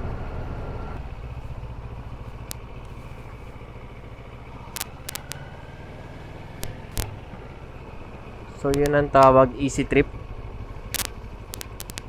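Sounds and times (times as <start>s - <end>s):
short clicks: 4.8s - 5.4s, 6.6s - 7.2s, 11.0s - 12.0s.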